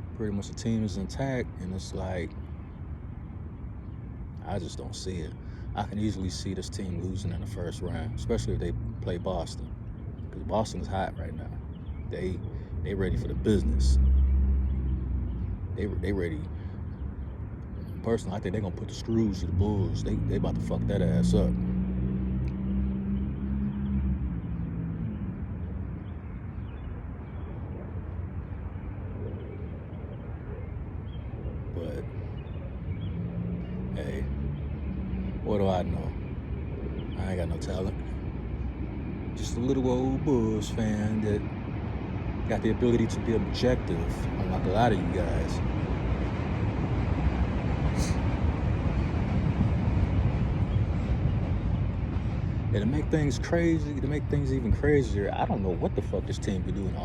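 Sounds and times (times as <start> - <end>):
traffic rumble: 0.0 - 57.0
vehicle engine humming: 0.0 - 57.0.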